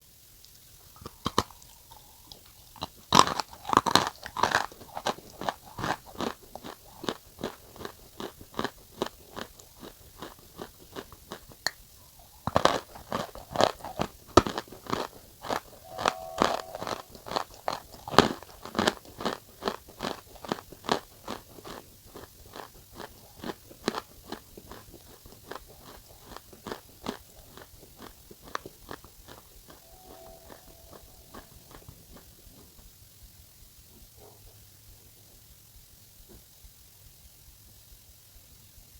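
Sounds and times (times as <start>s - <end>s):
crunchy chewing: 0.5s - 32.8s
crisp bites: 12.4s - 16.1s.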